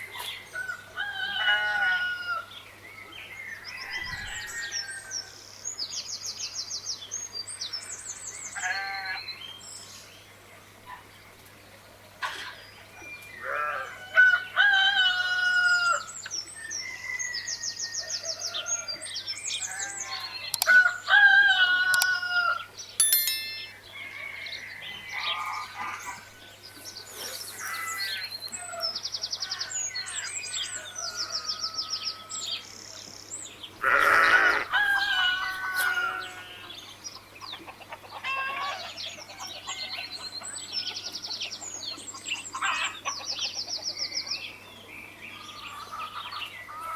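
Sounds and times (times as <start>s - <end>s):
chickens crowing and clucking: 0.2s - 2.6s, 13.4s - 16.1s, 16.8s - 22.8s, 23.9s - 32.6s, 33.8s - 44.5s.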